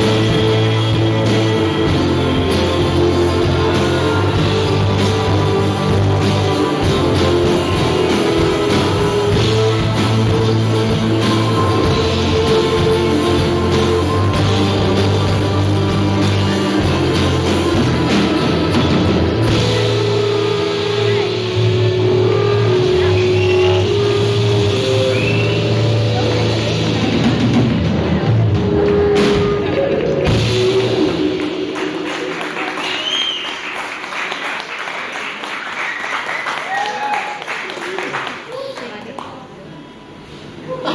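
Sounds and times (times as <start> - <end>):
bass line: 0.0 - 32.8
drum and cymbal hits: 0.0 - 32.8
rock band instrumental: 0.0 - 33.1
electric guitars: 0.0 - 33.2
audience applause: 25.1 - 39.6.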